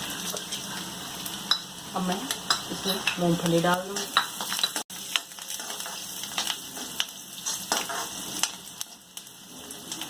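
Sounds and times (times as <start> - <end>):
oil sizzling in a pan: 0.0 - 10.0
spatula scraping and tapping pan: 3.9 - 8.6.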